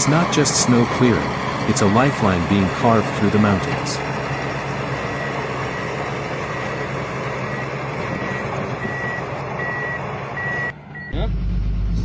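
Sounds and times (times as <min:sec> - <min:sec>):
heavy machine engine running: 0:00.0 - 0:12.0
reversing alarm beeps: 0:07.5 - 0:12.0.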